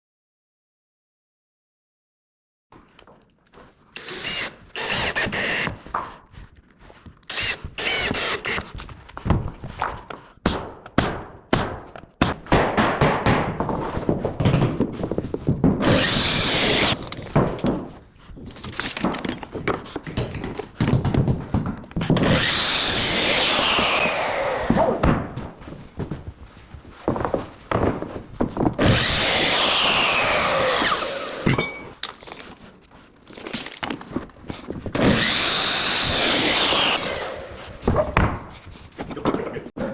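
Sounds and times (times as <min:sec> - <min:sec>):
timber knocking and thunking: 0:02.8 - 0:32.3, 0:33.4 - 0:39.9
power tool running: 0:04.0 - 0:05.8, 0:07.3 - 0:08.8, 0:15.8 - 0:17.1, 0:22.2 - 0:25.0, 0:28.8 - 0:31.9, 0:35.0 - 0:37.7.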